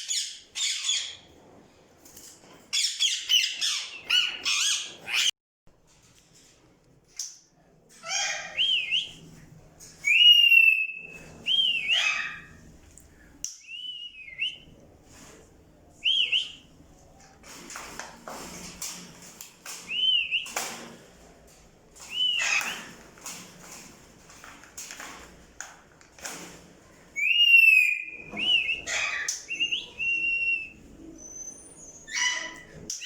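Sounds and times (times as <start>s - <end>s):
parrot squawks: 2.8s - 5.3s, 8.0s - 8.6s, 11.9s - 12.5s
parrots whistling: 10.0s - 12.5s, 22.1s - 22.9s, 27.2s - 32.6s.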